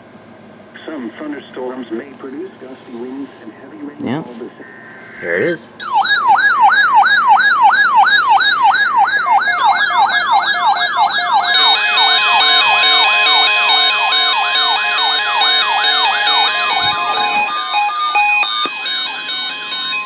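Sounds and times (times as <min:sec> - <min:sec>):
electronic alert siren sweeps: 0:05.8 - 0:20.0.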